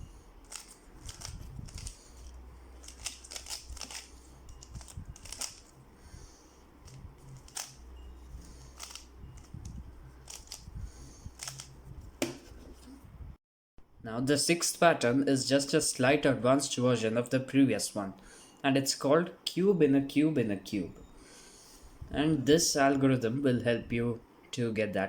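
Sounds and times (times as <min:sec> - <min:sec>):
plastic puzzle cube clicking: 0:00.4 - 0:05.7, 0:07.3 - 0:07.8, 0:08.7 - 0:10.7, 0:11.4 - 0:11.7.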